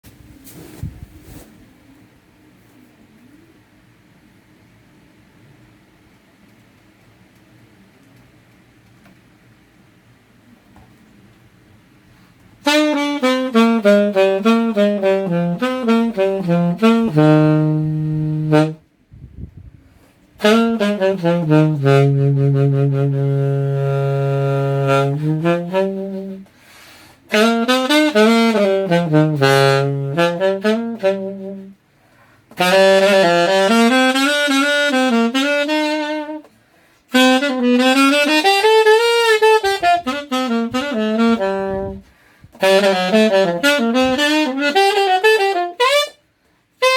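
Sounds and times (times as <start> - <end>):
alto saxophone melody: 12.6 - 18.9, 20.4 - 46.9.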